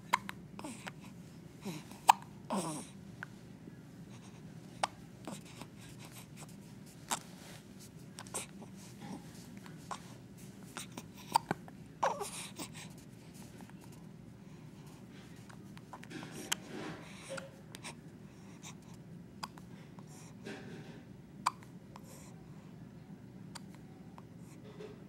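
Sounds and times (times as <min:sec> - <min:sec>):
baby hiccuping: 0:01.7 - 0:02.9, 0:21.4 - 0:21.6.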